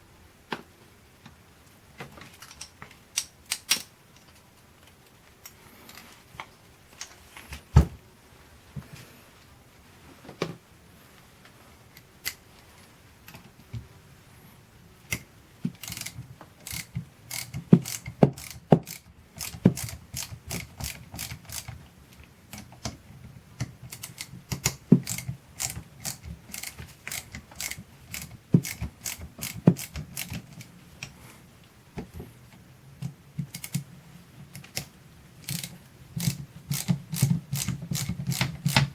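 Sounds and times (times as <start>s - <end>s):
hand tools clicking on metal: 15.8s - 21.8s, 23.6s - 31.2s, 34.6s - 38.9s.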